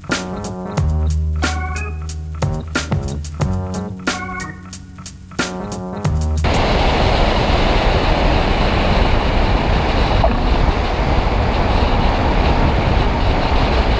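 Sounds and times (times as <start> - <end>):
wind noise: 0.0 - 13.9.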